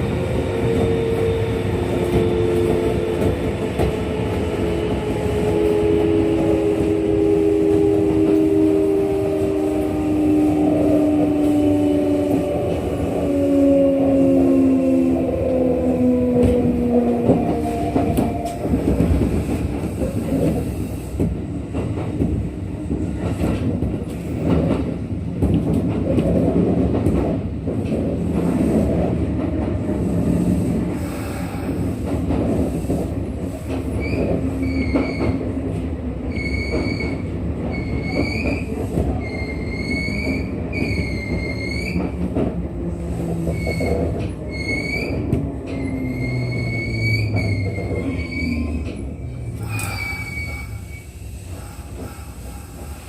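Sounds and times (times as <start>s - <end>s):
electric train rumbling on rails: 0.0s - 53.0s
metallic wheel squeal: 43.5s - 51.2s.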